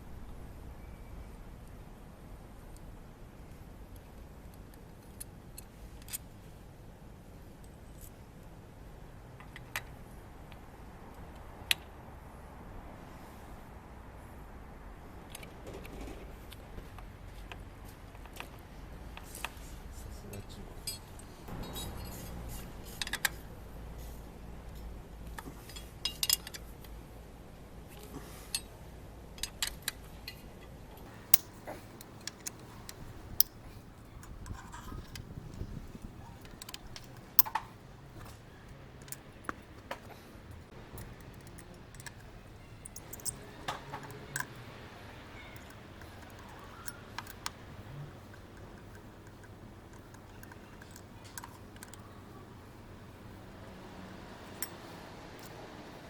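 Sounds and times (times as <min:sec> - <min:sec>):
metal tools and bolts clinking: 0:31.1 - 0:52.3, 0:54.4 - 0:55.5.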